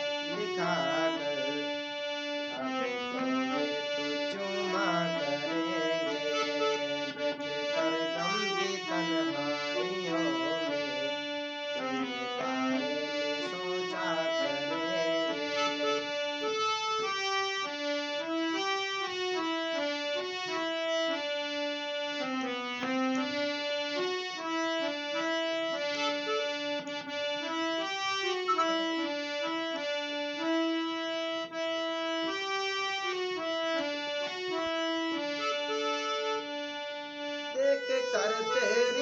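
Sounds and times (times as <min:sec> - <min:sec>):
reedy keyboard melody: 0:00.0 - 0:39.0.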